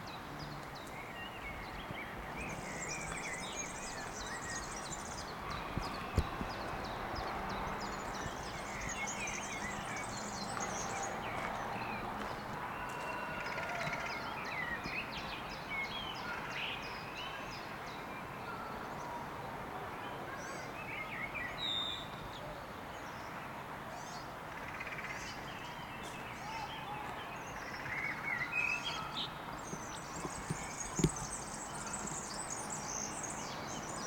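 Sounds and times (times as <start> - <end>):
birds chirping: 0.0 - 16.1, 24.9 - 34.0
background environmental noise: 0.0 - 34.0.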